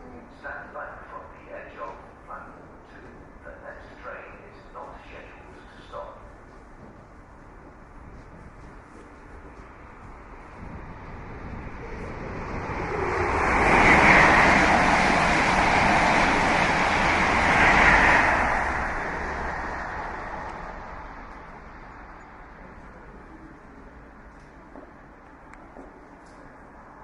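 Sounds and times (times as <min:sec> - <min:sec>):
train passing with rushing rumble: 0:00.0 - 0:27.0.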